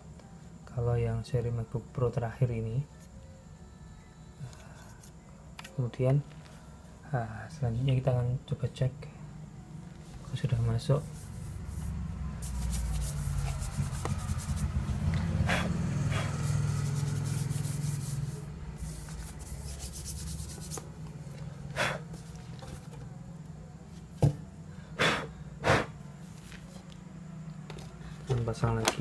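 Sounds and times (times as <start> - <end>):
hands rubbing and scraping laptop: 10.1 - 14.7, 16.2 - 20.9.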